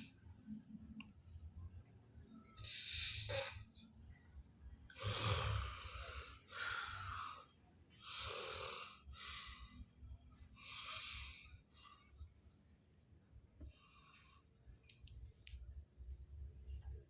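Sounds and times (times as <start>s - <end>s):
person snoring: 5.0s - 7.4s.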